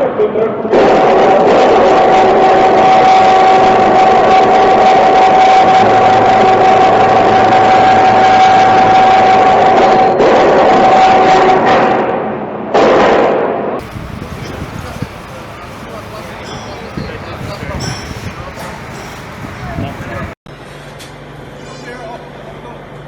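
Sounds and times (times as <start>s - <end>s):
machinery whining and rumbling: 13.8s - 20.4s.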